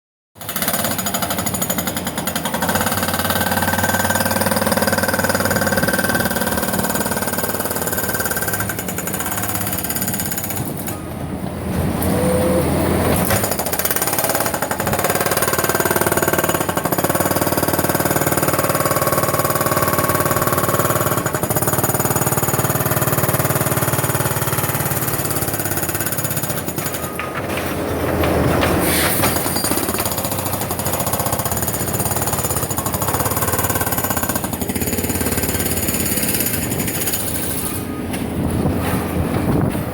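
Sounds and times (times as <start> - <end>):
jackhammer pounding concrete: 0.4 - 11.0, 13.3 - 27.4, 29.3 - 37.8.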